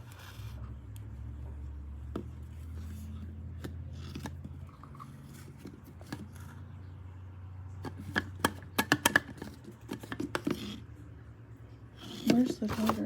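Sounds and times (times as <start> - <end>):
faint low hum: 0.0 - 13.0
plastic clicks and taps: 7.8 - 10.6.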